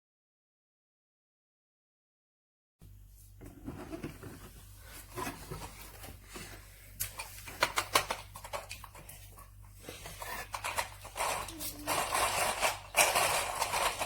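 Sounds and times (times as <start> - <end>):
objects clicking and knocking: 7.0 - 14.0.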